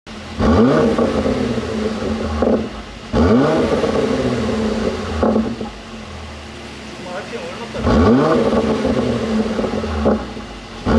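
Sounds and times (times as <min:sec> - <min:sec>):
car engine revving: 0:00.1 - 0:10.9
exhaust pops: 0:00.1 - 0:10.9.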